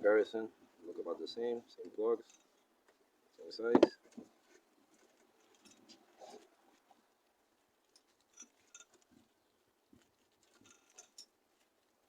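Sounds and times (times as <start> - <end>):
light rustles: 3.8 - 11.9.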